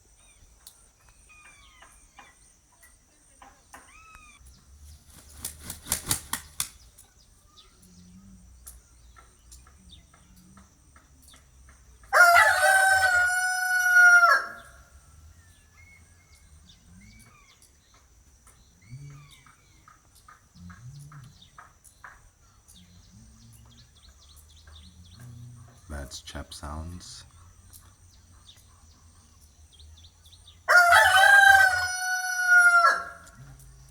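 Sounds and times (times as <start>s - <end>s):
wing flaps: 4.9s - 6.9s
rooster crowing: 12.1s - 14.9s, 30.7s - 33.4s.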